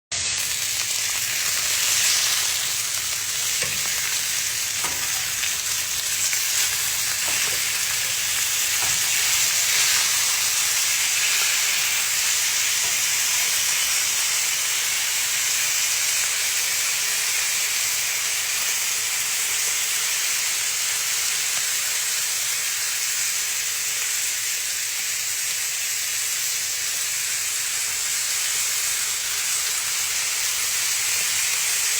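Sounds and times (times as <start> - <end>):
meat sizzling: 0.1 - 31.9.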